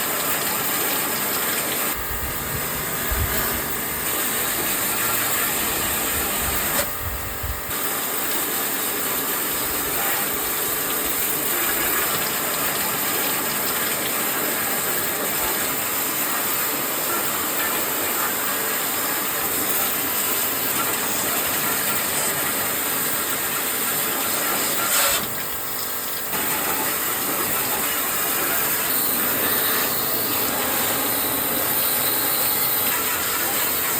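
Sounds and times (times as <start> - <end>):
pressure washer spraying: 0.0 - 33.9.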